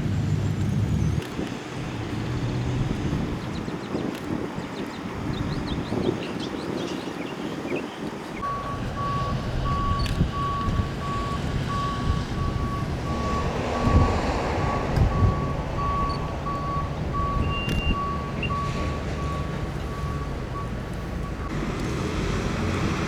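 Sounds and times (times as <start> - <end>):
vehicle rumble: 0.0 - 6.1, 8.1 - 23.0
wind noise: 0.0 - 21.5
vehicle backup alarm beeping: 8.4 - 21.6.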